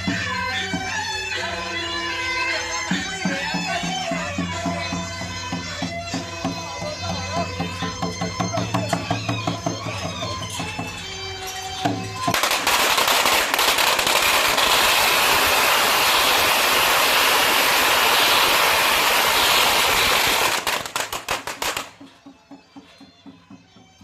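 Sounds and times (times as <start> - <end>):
firecrackers crackling: 12.2 - 22.1.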